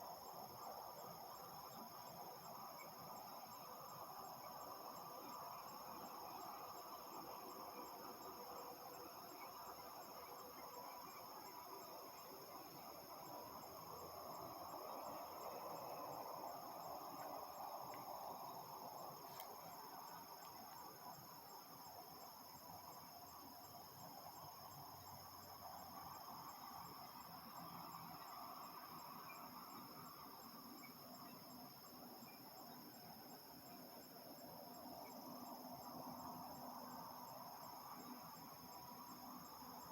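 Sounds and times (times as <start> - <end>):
insects trilling: 0.0 - 39.9.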